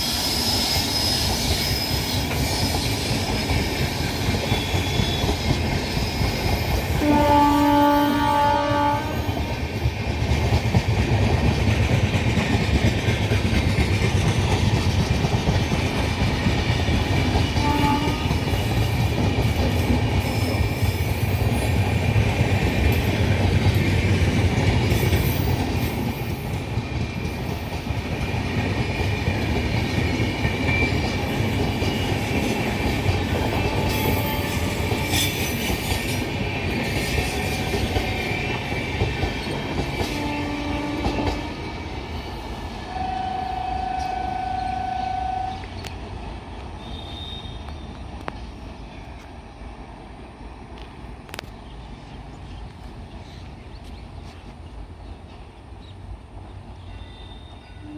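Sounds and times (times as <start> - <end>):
faint wheel squeal: 0.0 - 3.3
train rumbling past: 0.0 - 57.9.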